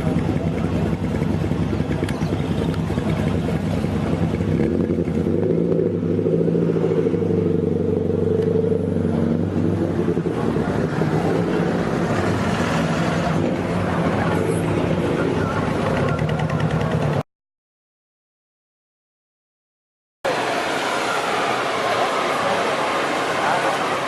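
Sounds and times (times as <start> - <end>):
car engine running: 0.0 - 12.0.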